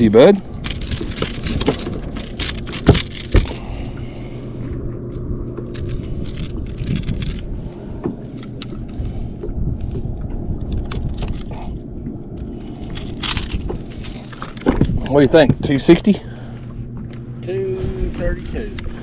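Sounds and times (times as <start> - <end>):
steady low hum: 0.0 - 19.0
fish knocking and rattling: 0.6 - 3.8, 12.8 - 15.7.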